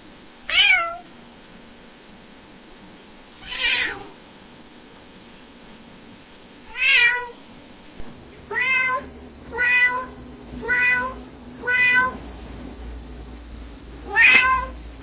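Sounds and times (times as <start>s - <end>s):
cat meowing softly: 0.5s - 1.1s, 3.4s - 4.2s, 6.6s - 7.4s, 14.1s - 14.8s.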